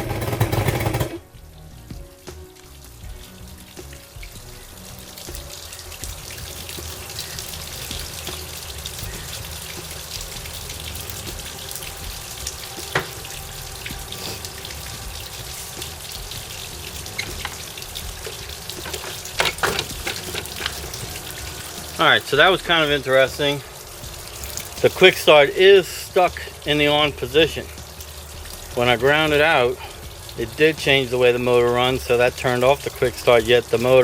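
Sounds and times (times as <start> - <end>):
water hissing and splashing: 0.0 - 34.0.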